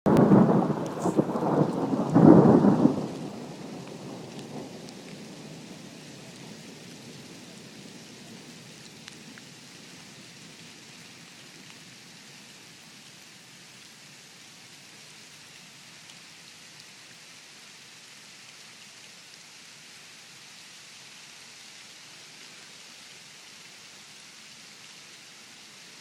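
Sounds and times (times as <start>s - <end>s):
thunder rumbling: 0.1s - 8.6s
rain hissing: 0.1s - 26.0s.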